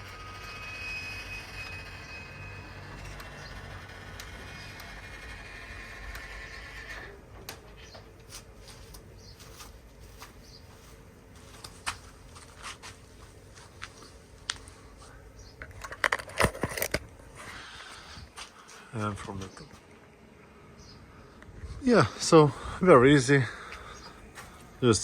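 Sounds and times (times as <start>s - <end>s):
awning crank clicks and creaks: 0.0s - 8.0s, 15.6s - 17.0s.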